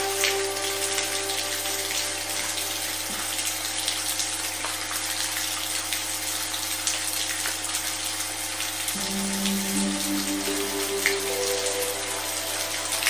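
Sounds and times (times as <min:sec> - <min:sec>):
rain hiss: 0:00.0 - 0:13.0
low frequency drone: 0:09.0 - 0:13.0.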